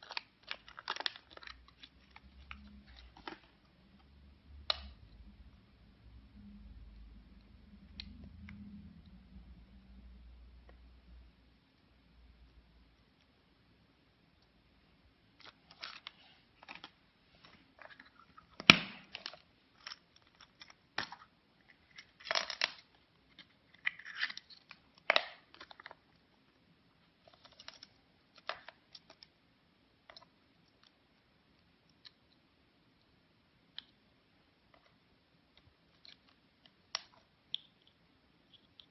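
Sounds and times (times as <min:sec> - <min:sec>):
plastic crinkling and cracking: 0:00.0 - 0:03.7, 0:15.3 - 0:26.3, 0:27.2 - 0:29.3.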